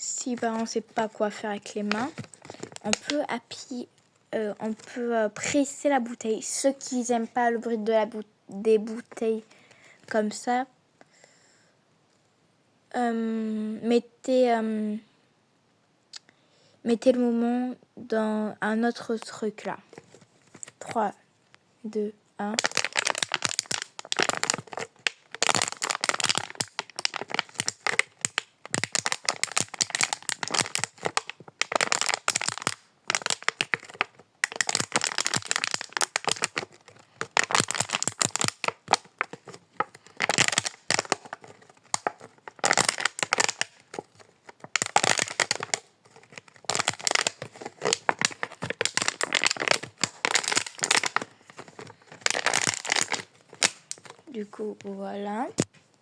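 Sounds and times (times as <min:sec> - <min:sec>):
plastic bottle crackling: 0:00.0 - 0:03.6, 0:19.9 - 0:21.0, 0:22.4 - 0:54.4.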